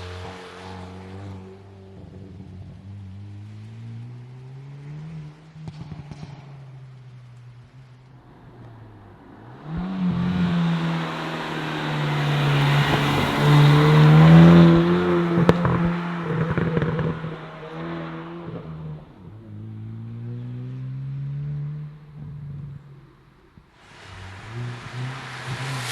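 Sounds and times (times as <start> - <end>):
exhaust crack: 5.3 - 17.9, 23.0 - 25.9
car engine revving: 7.8 - 23.2, 23.8 - 25.9.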